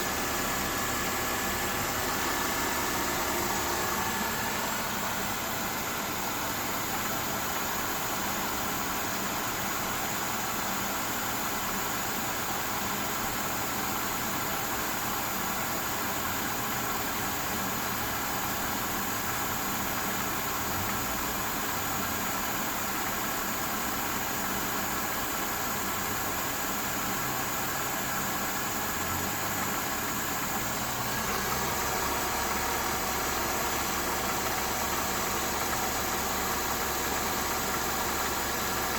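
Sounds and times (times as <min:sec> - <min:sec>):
car engine idling: 0:00.0 - 0:38.9
ticking knocking engine clatter: 0:27.5 - 0:38.9.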